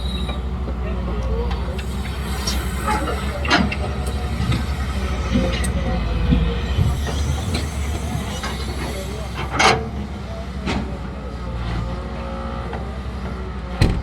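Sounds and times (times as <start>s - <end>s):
metallic squeaks: 0.0s - 0.5s, 1.6s - 9.8s
heavy machinery rumbling: 0.0s - 14.0s.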